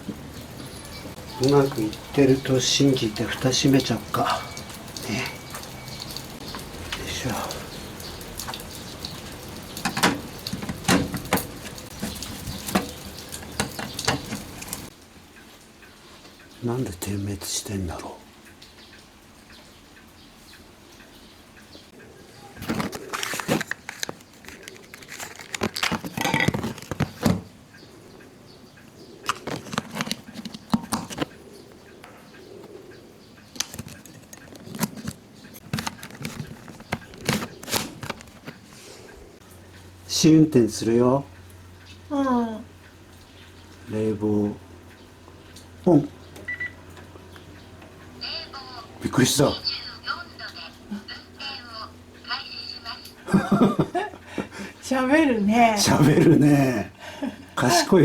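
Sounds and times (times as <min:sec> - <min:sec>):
plastic cover clicking: 0:22.6 - 0:27.5, 0:29.2 - 0:31.4, 0:33.5 - 0:38.6.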